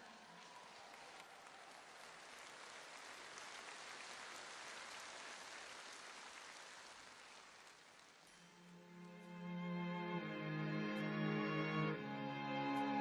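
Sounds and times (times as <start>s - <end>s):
faint audience applause: 0.0s - 9.3s.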